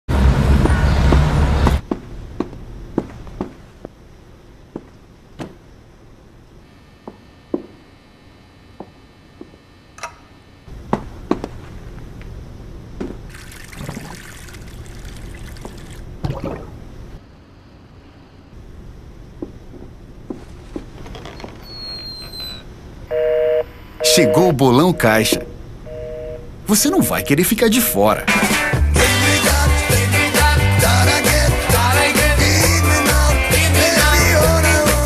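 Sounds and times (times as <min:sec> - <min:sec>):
water drips: 0:13.3 - 0:16.8
water pouring: 0:13.3 - 0:16.8
water splash: 0:13.3 - 0:16.8.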